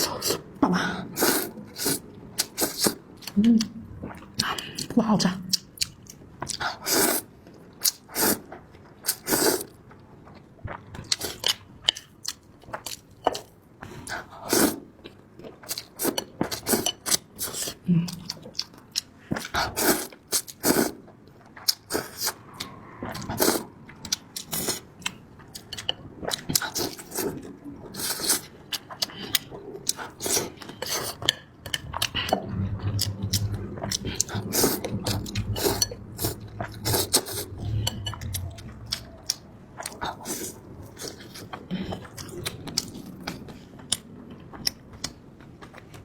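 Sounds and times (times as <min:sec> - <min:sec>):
chewing and mouth sounds: 0:00.0 - 0:46.0
low steady hum: 0:30.7 - 0:45.0.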